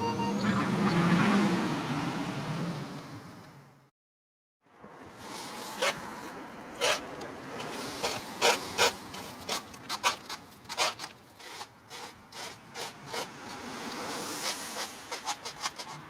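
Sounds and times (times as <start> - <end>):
hand tool rasping against wood: 6.8 - 16.0.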